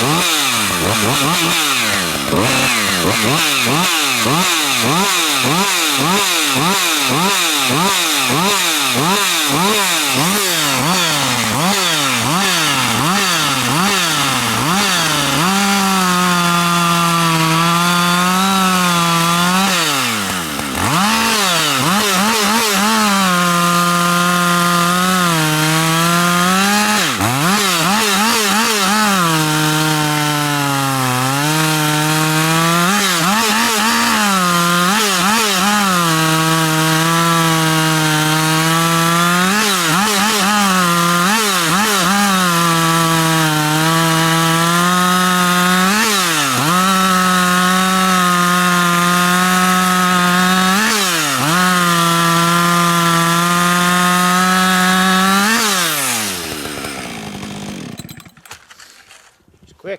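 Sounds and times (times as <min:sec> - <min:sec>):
chainsaw revving and cutting log: 0:00.0 - 0:59.2.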